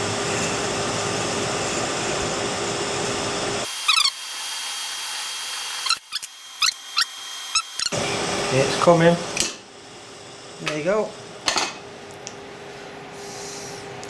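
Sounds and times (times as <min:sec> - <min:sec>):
hacksaw cutting spinning wood: 0:03.6 - 0:08.0.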